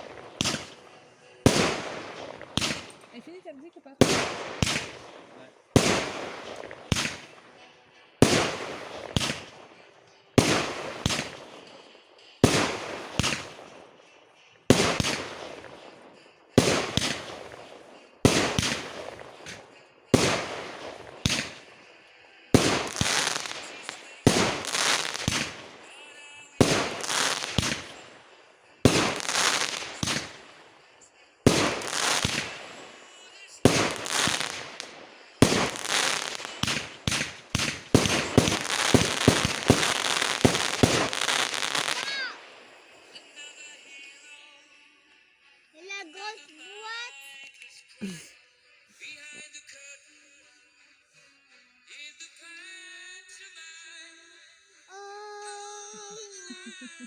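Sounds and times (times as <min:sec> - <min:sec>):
fireworks banging: 0:00.0 - 0:43.7.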